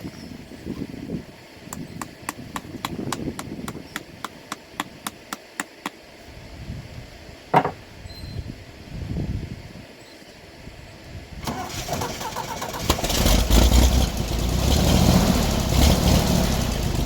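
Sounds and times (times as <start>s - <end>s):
loud knock: 7.6s - 7.8s.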